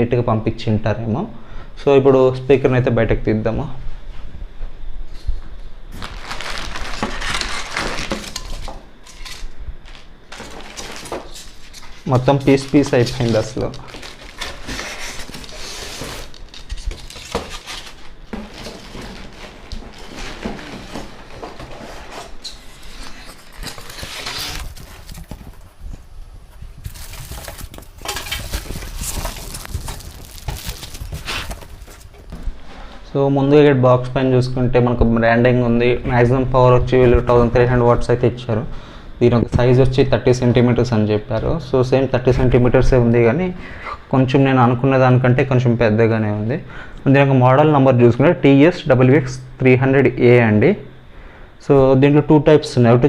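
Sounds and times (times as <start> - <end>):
cardboard tearing and rustling: 6.0 - 25.8, 26.6 - 32.4.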